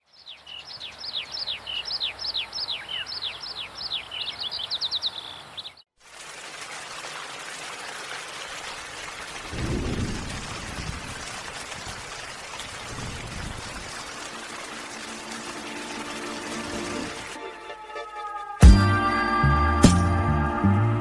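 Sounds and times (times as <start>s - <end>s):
steady rain: 0.4s - 18.2s
rumble of thunder: 9.5s - 12.0s.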